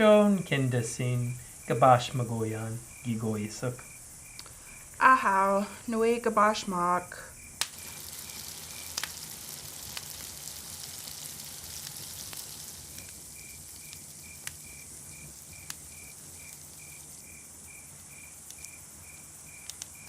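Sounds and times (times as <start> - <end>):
cricket chirping: 0.0 - 20.0
food sizzling as it fries: 7.4 - 20.0.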